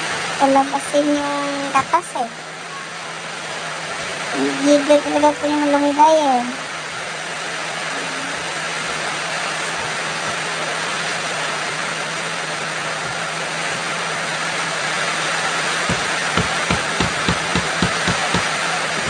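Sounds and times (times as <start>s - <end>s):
heavy rain falling: 0.0s - 19.0s
soft low thumps: 15.9s - 18.5s.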